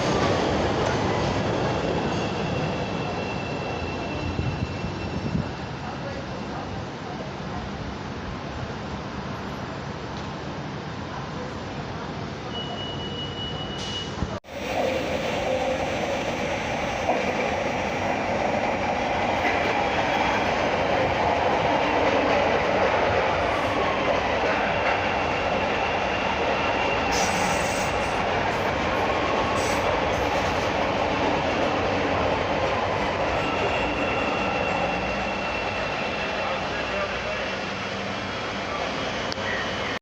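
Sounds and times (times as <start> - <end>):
train wheels rumbling on track: 0.0 - 40.0
faint high wheel squeal: 1.6 - 6.6, 12.4 - 14.2, 33.3 - 37.9.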